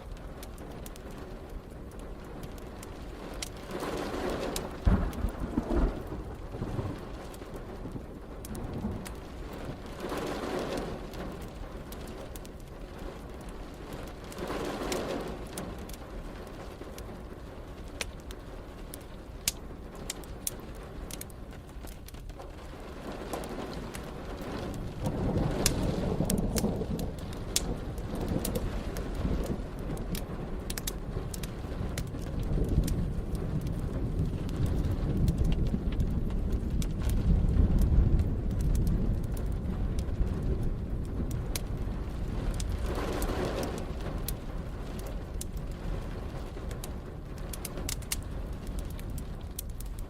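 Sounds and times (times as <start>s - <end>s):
steady rain: 0.0s - 50.0s
wood fire crackling: 0.0s - 50.0s
rolling thunder: 2.6s - 12.0s, 23.0s - 50.0s.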